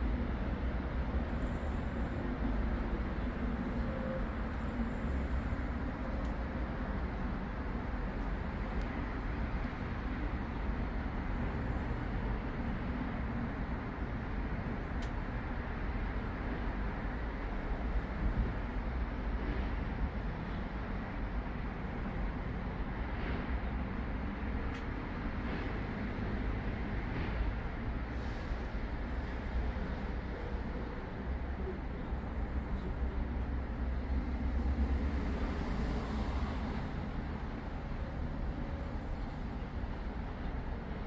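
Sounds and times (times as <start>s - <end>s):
cars passing on road: 0.0s - 41.0s
cat breathing softly: 31.6s - 36.8s.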